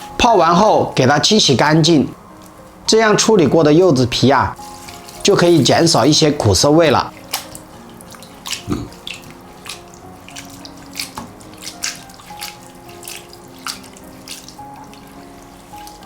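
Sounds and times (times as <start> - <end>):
water splashing: 4.5 - 16.0.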